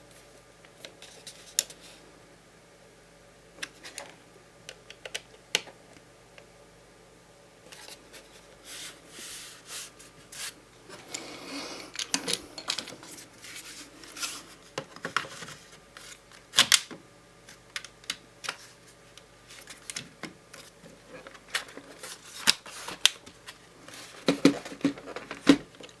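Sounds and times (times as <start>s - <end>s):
rubbing on laptop: 8.0s - 10.6s.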